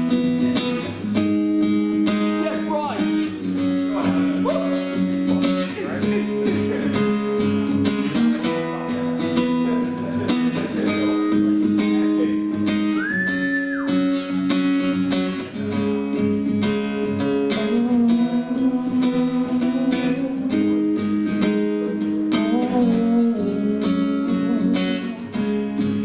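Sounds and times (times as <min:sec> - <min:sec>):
acoustic guitar strumming: 0:00.0 - 0:26.0.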